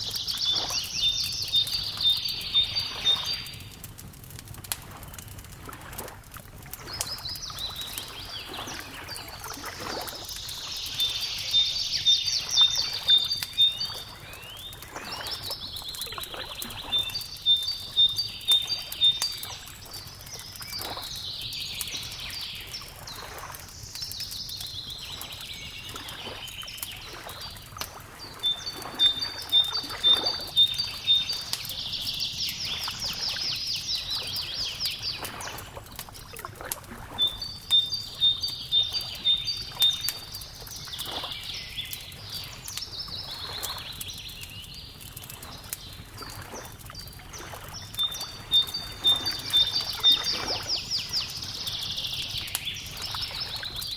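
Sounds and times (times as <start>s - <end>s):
songbirds singing: 0.0s - 3.8s, 6.8s - 53.9s
wood fire crackling: 0.0s - 53.9s.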